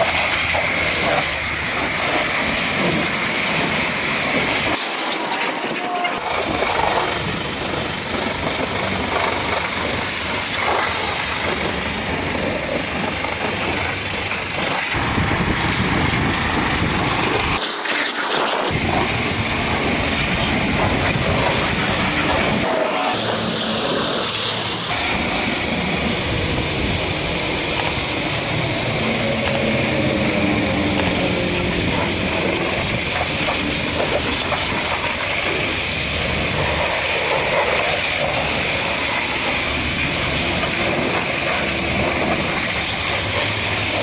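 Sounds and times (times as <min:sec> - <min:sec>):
pressure washer spraying water: 0:00.0 - 0:44.0.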